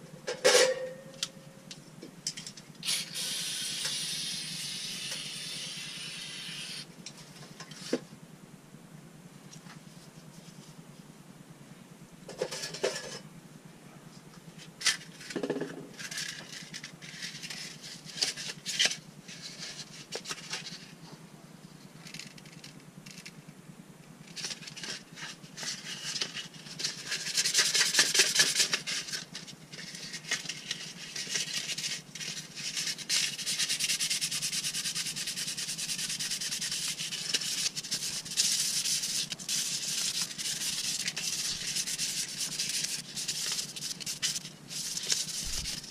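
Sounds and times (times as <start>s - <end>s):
brake pad rubbing on sandpaper: 29.8s - 45.9s.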